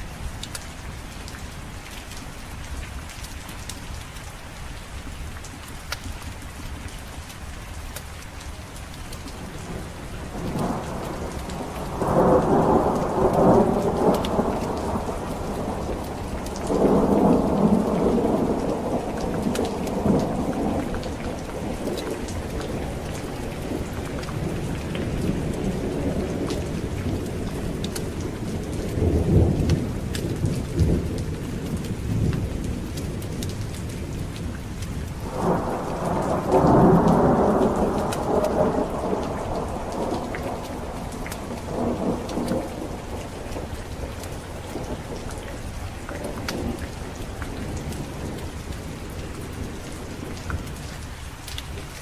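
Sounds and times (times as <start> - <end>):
steady rain falling: 0.0 - 52.0
thunder rumbling: 9.4 - 51.0.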